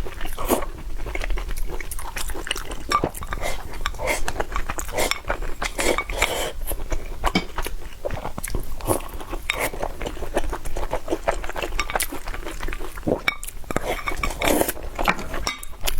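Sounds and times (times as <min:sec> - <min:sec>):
wet chewing and crunching: 0:00.0 - 0:15.9
utensils clinking on a dish: 0:11.8 - 0:15.9.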